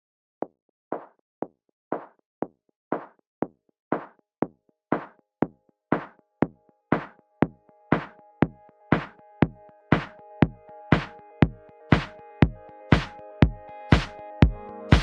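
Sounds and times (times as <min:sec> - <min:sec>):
drum machine beat: 0:02.9 - 0:03.1, 0:03.9 - 0:04.1, 0:04.9 - 0:05.1, 0:05.9 - 0:15.0
held synth chords: 0:07.4 - 0:15.0.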